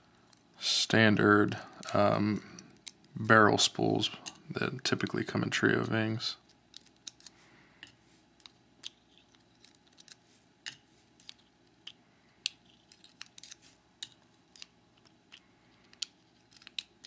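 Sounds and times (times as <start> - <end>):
small metal parts clicking: 6.4 - 17.0.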